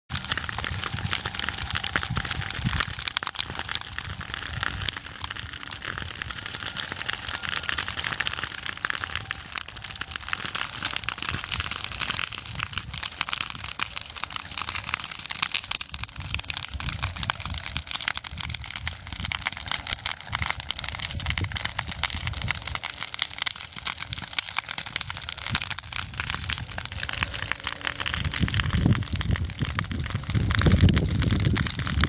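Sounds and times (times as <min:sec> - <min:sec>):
fire crackling and popping: 0:00.1 - 0:32.0
low uneven rumble: 0:24.9 - 0:32.0.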